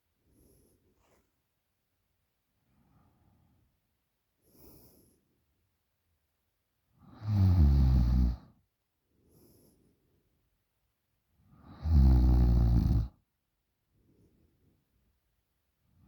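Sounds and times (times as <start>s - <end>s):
faint breaths: 0.2s - 1.3s, 2.6s - 5.5s, 9.2s - 10.4s
person snoring: 7.1s - 8.4s, 11.7s - 13.1s.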